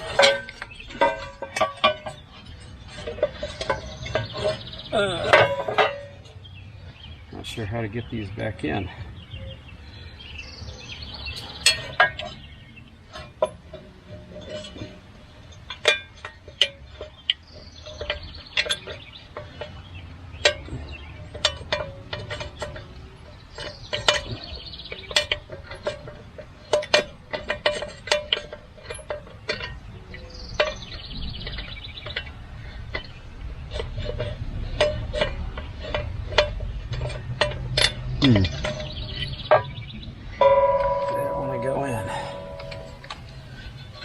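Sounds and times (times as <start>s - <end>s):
metal bolts clinking: 0.0s - 6.4s, 10.4s - 44.0s
bird calling: 38.2s - 44.0s.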